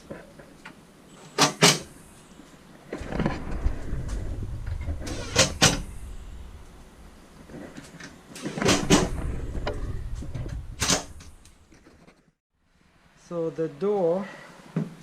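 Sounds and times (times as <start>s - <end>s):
low rumble: 1.9s - 11.9s
sharp knocks and clatters: 2.9s - 12.3s.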